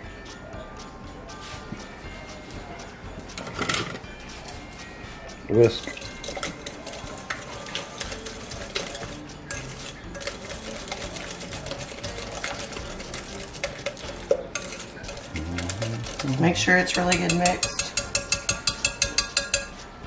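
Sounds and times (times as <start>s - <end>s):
whisk clinking in bowl: 5.5s - 20.0s.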